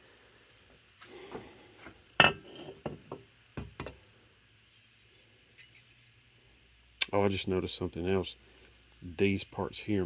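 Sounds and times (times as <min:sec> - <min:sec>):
small metal parts clinking: 0:05.5 - 0:06.1.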